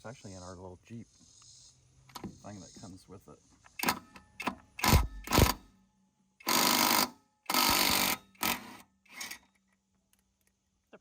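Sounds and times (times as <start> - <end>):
impact wrench bursts: 3.8 - 5.6, 6.4 - 9.4.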